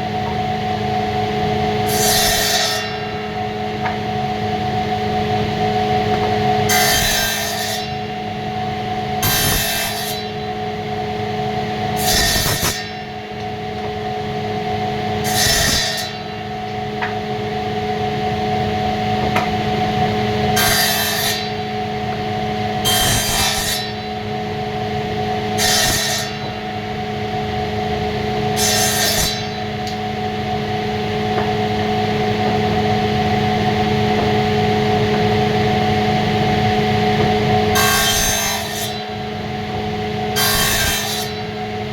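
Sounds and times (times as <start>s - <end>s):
machine cutting wood: 1.8s - 3.5s, 5.6s - 8.0s, 9.2s - 10.4s, 12.0s - 13.1s, 15.2s - 16.4s, 20.4s - 21.7s, 22.4s - 24.1s, 25.4s - 26.8s, 28.4s - 30.0s, 31.3s - 39.2s, 40.2s - 41.9s
woodworking machine motor hum: 8.6s - 41.9s.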